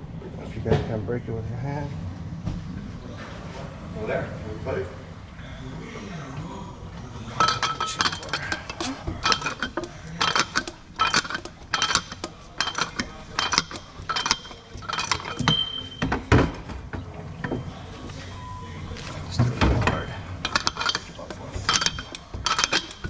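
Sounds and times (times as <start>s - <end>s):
ratchet and socket clinking: 7.4s - 16.6s, 20.4s - 23.0s.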